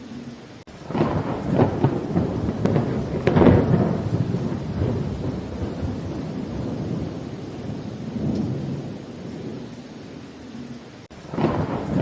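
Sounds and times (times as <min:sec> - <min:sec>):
rain hiss: 0:00.0 - 0:12.0
thunder rumbling: 0:00.6 - 0:12.0
thunder crack: 0:00.8 - 0:09.6, 0:11.2 - 0:12.0.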